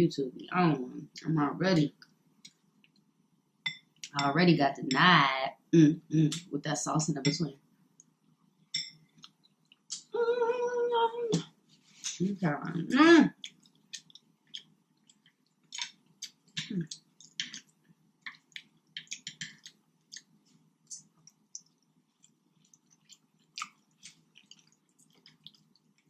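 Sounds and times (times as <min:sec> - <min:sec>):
lip smacks and mouth clicks: 0:13.4 - 0:26.0
wet chewing: 0:13.4 - 0:26.0.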